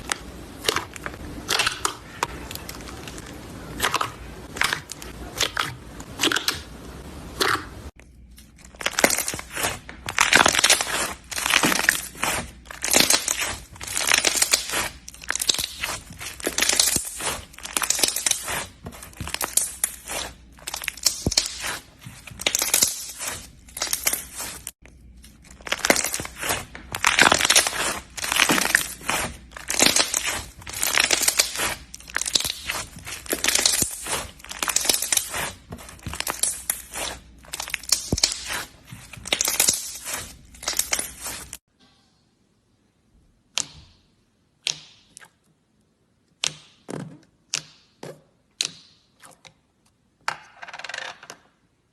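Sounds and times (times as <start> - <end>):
slime crackling when squeezed: 8.7 - 24.7, 25.4 - 41.6.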